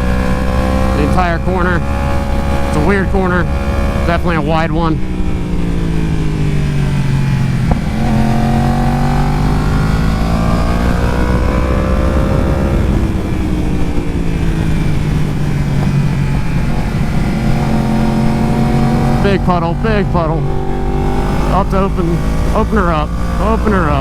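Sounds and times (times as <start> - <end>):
motorcycle engine at speed: 0.0 - 24.0.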